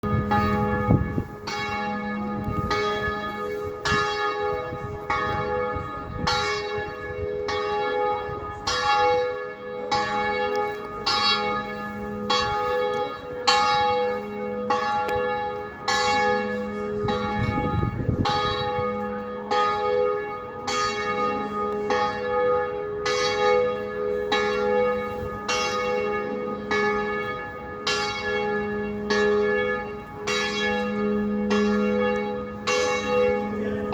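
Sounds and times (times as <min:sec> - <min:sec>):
wind rumble on microphone: 0:00.0 - 0:07.4, 0:16.7 - 0:19.1
bells ringing: 0:00.0 - 0:33.9.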